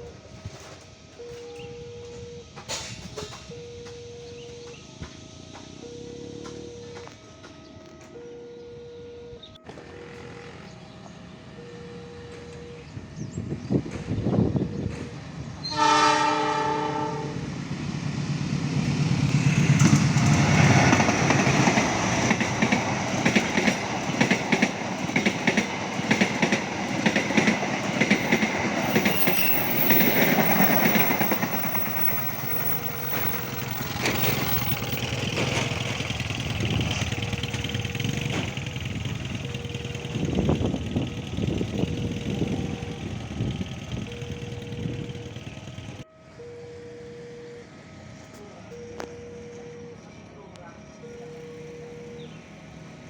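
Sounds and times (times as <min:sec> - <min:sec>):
train horn blast: 0:15.6 - 0:17.6
train wheels clacking over rail joints: 0:18.8 - 0:46.0.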